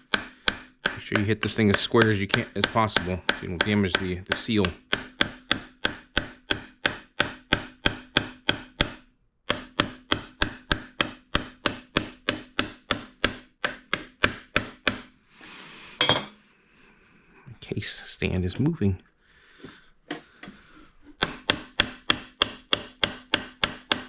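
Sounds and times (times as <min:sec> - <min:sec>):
hammer striking metal: 0:00.0 - 0:15.1, 0:21.2 - 0:24.0.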